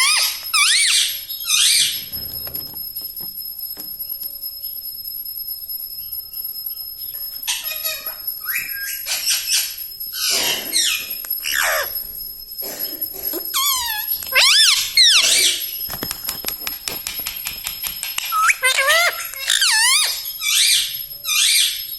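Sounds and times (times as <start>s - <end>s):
parakeet squawking: 7.5s - 12.0s, 13.5s - 15.8s, 18.3s - 21.8s.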